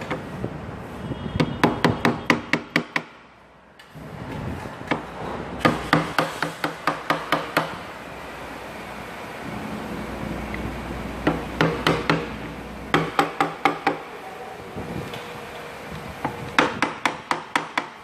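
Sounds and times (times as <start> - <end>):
hammer tapping: 5.6 - 7.8, 11.2 - 14.0.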